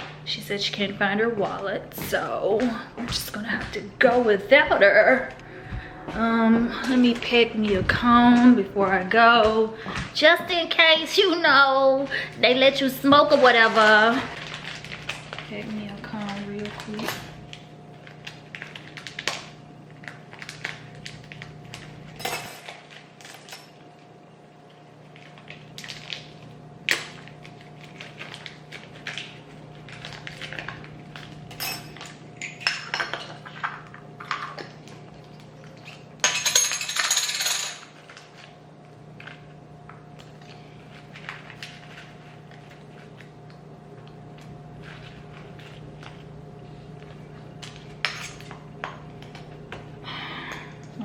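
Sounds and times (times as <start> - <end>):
faint hum: 0.0 - 51.0.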